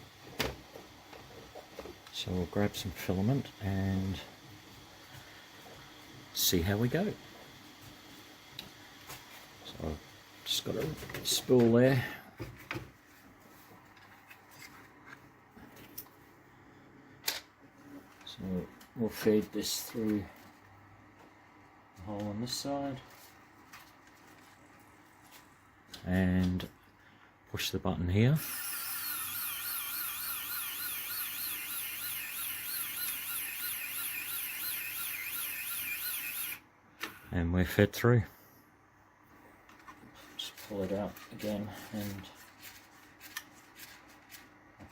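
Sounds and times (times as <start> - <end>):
small motors whining: 28.4 - 36.6
faint rubbing of filament: 40.2 - 44.1.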